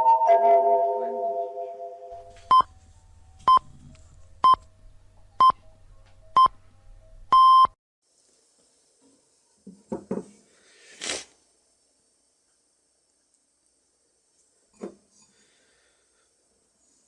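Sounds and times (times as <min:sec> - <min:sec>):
music: 0:00.0 - 0:07.3
electronic countdown beeps: 0:02.5 - 0:02.7, 0:07.3 - 0:07.8.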